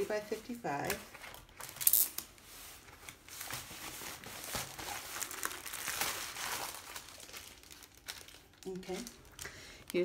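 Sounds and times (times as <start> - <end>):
plastic packaging crinkling: 3.1 - 10.0.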